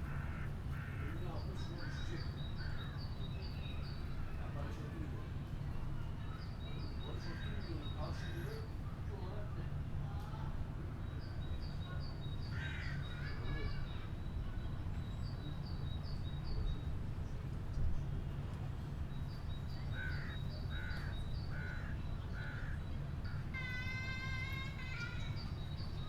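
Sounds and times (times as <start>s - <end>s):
crow cawing: 23.6s - 25.1s.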